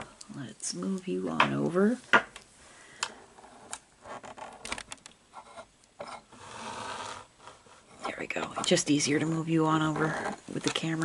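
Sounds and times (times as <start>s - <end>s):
rubbing: 5.4s - 11.0s.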